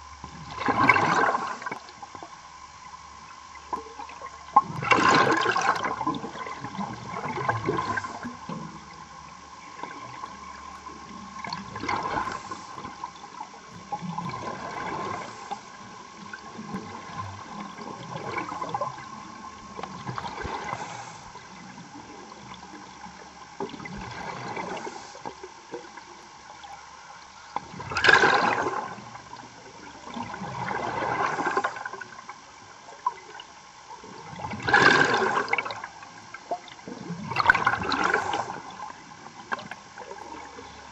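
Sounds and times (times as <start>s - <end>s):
exhaled bubbles surging: 0.0s - 2.0s, 4.0s - 26.2s, 27.6s - 32.2s, 33.0s - 40.9s
faint steady tone: 0.0s - 40.9s
scuba regulator bubbling underwater: 4.0s - 23.0s, 23.6s - 25.1s.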